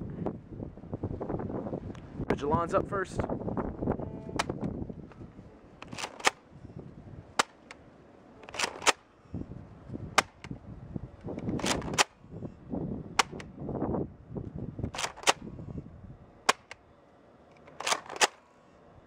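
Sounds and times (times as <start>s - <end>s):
wind buffeting microphone: 0.0s - 7.4s, 8.6s - 16.7s
plastic blaster snaps: 7.4s - 7.7s, 10.2s - 10.5s, 11.4s - 12.2s, 13.2s - 13.5s, 16.5s - 16.8s.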